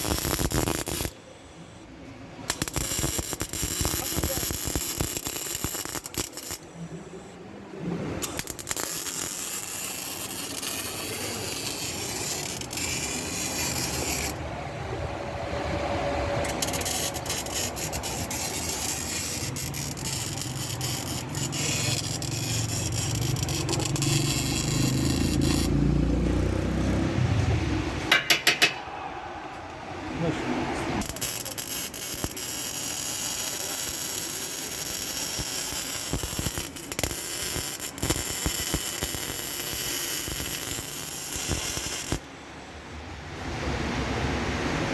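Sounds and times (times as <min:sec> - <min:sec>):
rasping metal scraping: 0:02.5 - 0:06.7, 0:08.2 - 0:14.5, 0:16.4 - 0:27.2, 0:30.9 - 0:42.2.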